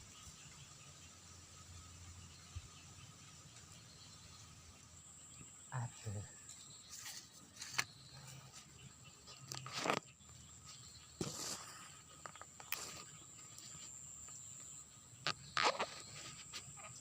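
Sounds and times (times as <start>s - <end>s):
insects buzzing: 0.0s - 17.0s
short rustling: 11.2s - 11.8s.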